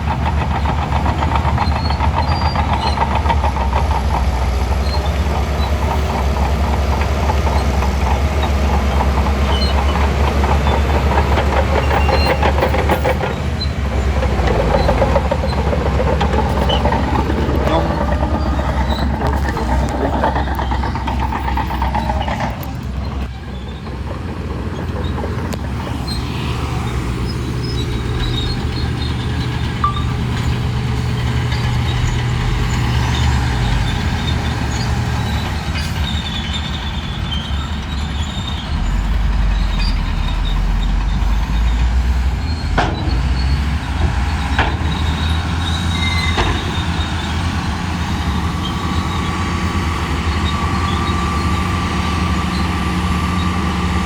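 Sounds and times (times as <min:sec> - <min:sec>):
bulldozer diesel engine running: 0:00.0 - 0:54.0.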